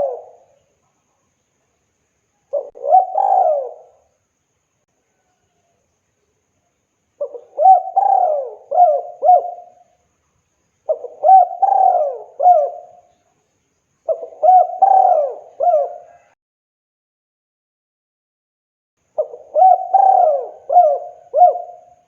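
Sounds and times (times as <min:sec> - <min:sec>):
dove cooing: 0:00.0 - 0:00.6, 0:02.5 - 0:04.1, 0:07.2 - 0:09.8, 0:10.9 - 0:13.1, 0:14.1 - 0:16.4, 0:19.2 - 0:22.0.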